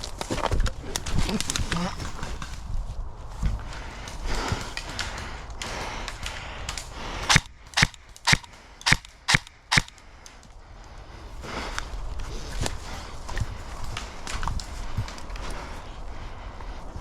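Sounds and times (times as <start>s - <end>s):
rustling movement: 0.0s - 16.0s
airsoft gun shots: 7.3s - 9.9s.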